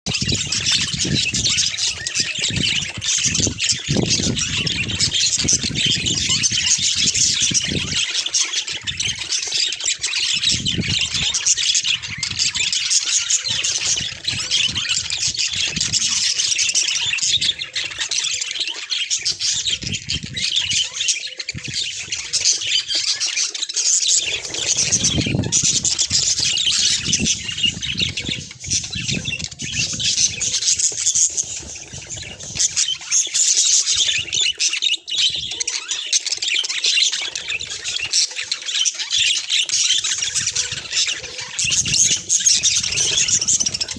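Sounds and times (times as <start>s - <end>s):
budgerigars chattering: 0.1s - 43.9s.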